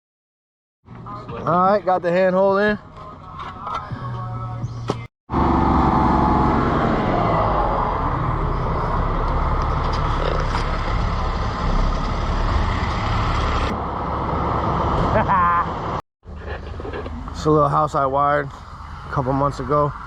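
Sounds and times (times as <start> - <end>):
road noise: 0.8 - 20.0
vehicle engine running: 4.0 - 20.0.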